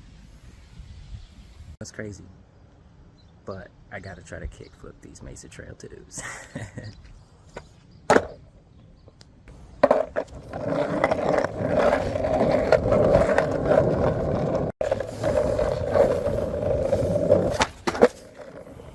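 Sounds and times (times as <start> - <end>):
skateboard wheels rolling on pavement: 7.0 - 18.9
skateboard clack: 7.6 - 8.4, 9.5 - 18.8.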